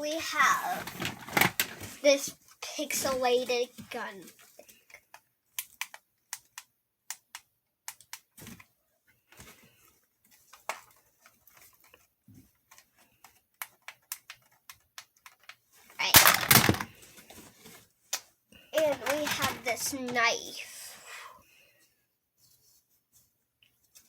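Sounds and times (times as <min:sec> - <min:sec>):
toy gun plastic clicks: 0:13.6 - 0:16.9.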